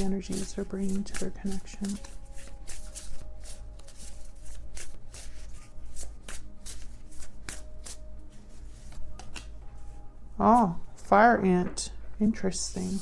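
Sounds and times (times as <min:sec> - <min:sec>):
cards being shuffled: 0:00.0 - 0:09.6.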